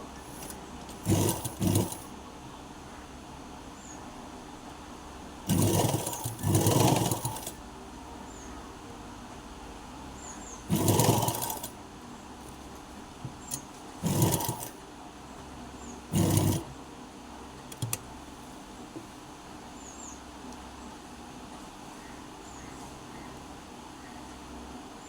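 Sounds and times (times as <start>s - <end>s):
sewing machine stitching: 0.2s - 2.1s, 5.5s - 7.6s, 10.7s - 11.8s, 13.4s - 14.8s, 16.1s - 16.7s, 17.7s - 18.0s
small clicks: 17.7s - 18.0s.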